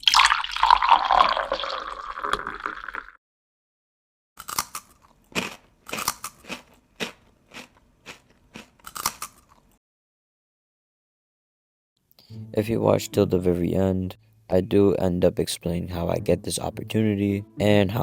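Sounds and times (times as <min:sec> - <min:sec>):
sharp crunching clicks: 0:04.4 - 0:09.7.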